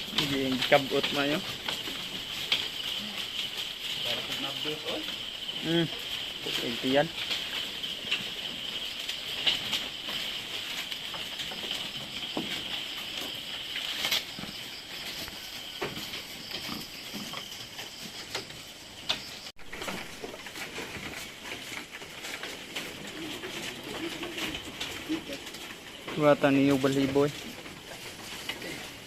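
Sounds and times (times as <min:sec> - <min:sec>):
hooves knocking: 0:00.0 - 0:29.0.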